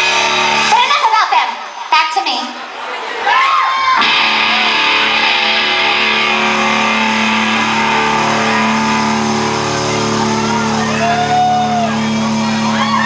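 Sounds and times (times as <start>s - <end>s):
electric guitar chord ringing: 0.0s - 0.8s, 4.0s - 13.0s.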